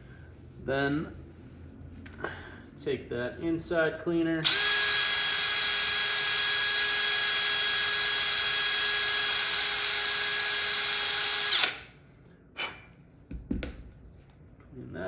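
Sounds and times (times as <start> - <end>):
power drill with wire brush: 4.4 - 11.8.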